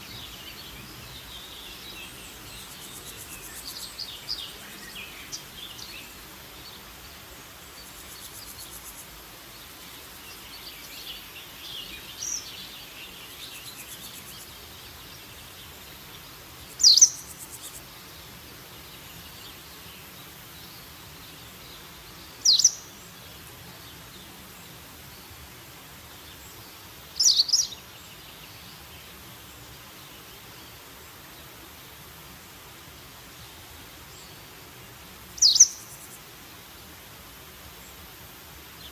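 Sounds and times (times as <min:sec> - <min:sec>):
steady background hiss: 0:00.0 - 0:38.9
faint bird chirps: 0:16.6 - 0:17.9, 0:20.6 - 0:23.3, 0:26.3 - 0:28.9, 0:35.4 - 0:36.2.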